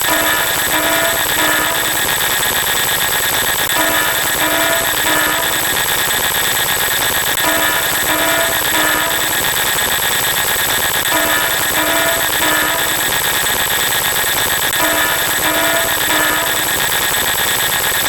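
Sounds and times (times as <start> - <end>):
steady high tones: 0.0 - 3.0, 3.6 - 18.0
alarm-like beeping: 0.0 - 18.0.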